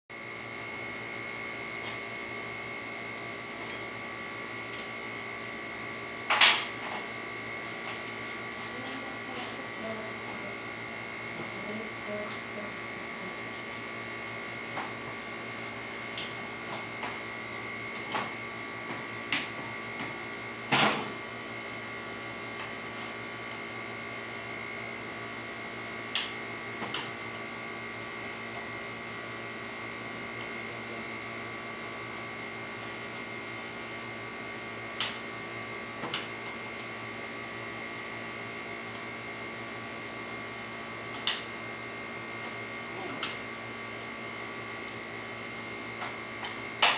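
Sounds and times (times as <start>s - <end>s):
machine hum: 0.1s - 46.9s.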